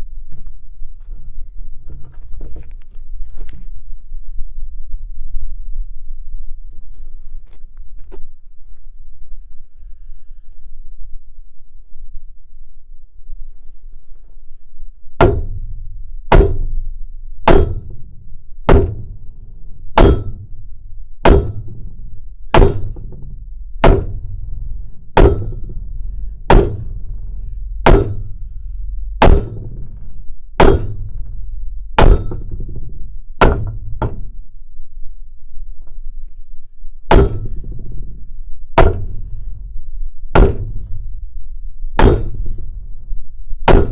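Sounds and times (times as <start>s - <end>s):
hammer striking metal: 15.2s - 16.8s, 17.5s - 19.2s, 20.0s - 20.5s, 21.2s - 28.6s, 29.2s - 31.4s, 32.0s - 34.3s, 37.1s - 38.1s, 38.8s - 39.4s, 40.4s - 41.0s, 42.0s - 42.6s, 43.7s - 43.9s.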